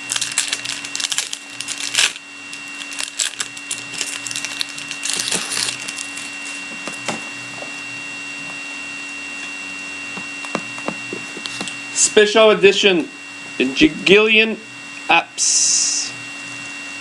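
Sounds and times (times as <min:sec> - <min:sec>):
cards clicking and rustling: 0:00.0 - 0:06.6
foil pack crinkling: 0:00.0 - 0:07.0, 0:11.1 - 0:11.8
steady low hum: 0:00.0 - 0:17.0.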